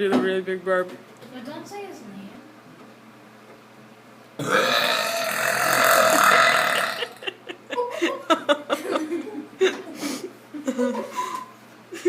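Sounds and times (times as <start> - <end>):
loud human burp: 4.4 - 7.2.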